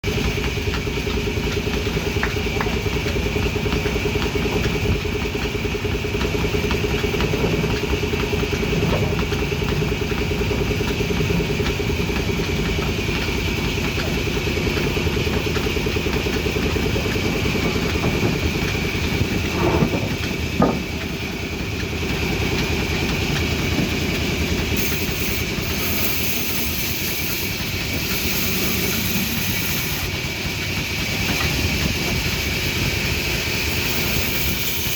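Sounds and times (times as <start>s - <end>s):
band saw running: 0.1s - 34.9s.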